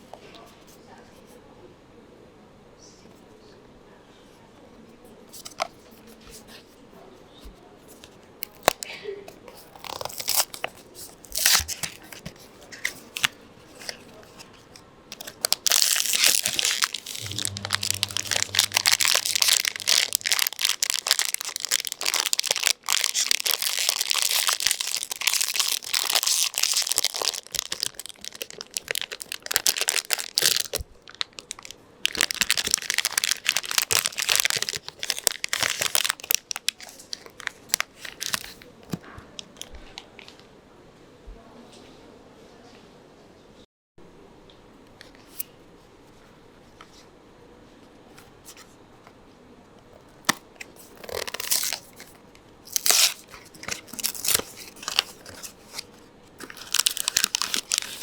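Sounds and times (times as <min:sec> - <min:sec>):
plastic wrapping crinkling and tearing: 0:09.5 - 0:14.2, 0:15.1 - 0:39.0, 0:50.2 - 0:58.0
low hum: 0:17.0 - 0:21.2.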